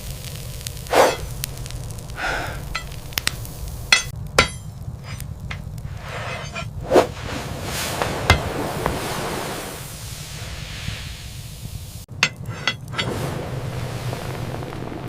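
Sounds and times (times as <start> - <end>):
steady low hum: 2.1 - 6.8
hammer blows on metal: 3.9 - 6.7, 12.2 - 13.1.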